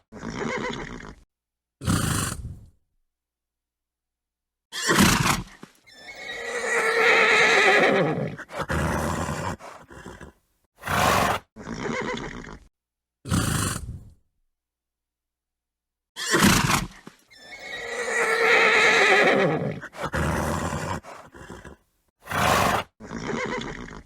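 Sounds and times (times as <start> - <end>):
horse whinnying: 0.0 - 1.2, 4.7 - 12.7, 16.2 - 24.0
horse snorting: 1.8 - 2.7, 4.9 - 12.7, 13.3 - 14.2, 16.2 - 24.0.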